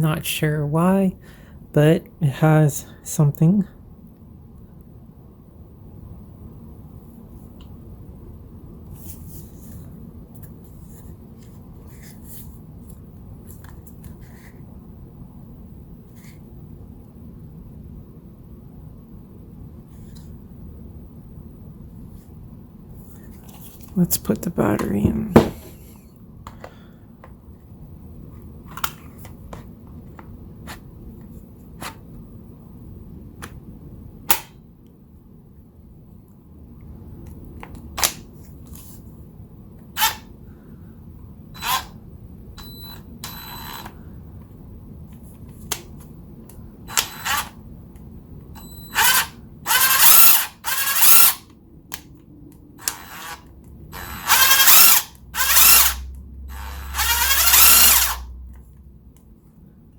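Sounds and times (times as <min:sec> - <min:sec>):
impact wrench motor bursts: 0:40.0 - 0:40.3, 0:41.6 - 0:42.0, 0:46.9 - 0:47.6, 0:48.9 - 0:51.5, 0:52.8 - 0:58.3.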